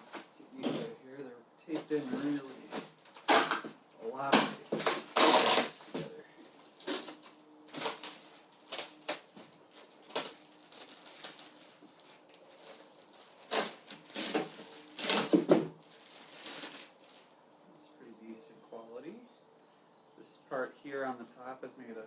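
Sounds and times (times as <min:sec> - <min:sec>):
styrofoam crackling: 0:01.8 - 0:17.4
packing tape pulled off: 0:02.0 - 0:03.7, 0:04.8 - 0:17.3.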